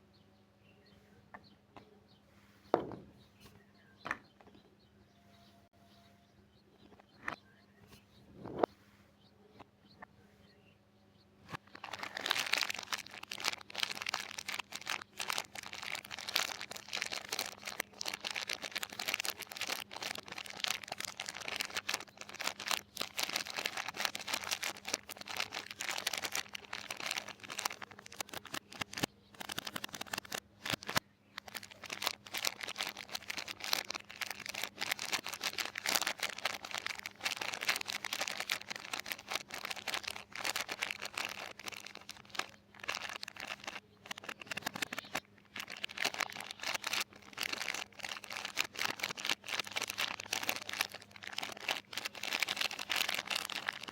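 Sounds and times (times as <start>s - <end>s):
soap wrappers crinkling and tearing: 11.6s - 53.9s.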